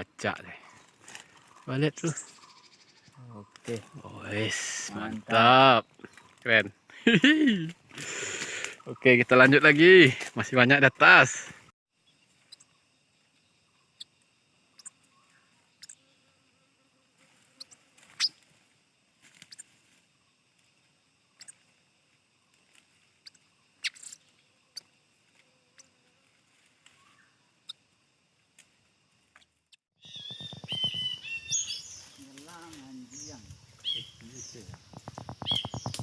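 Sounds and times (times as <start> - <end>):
faint scattered clicks: 33.9 - 36.0.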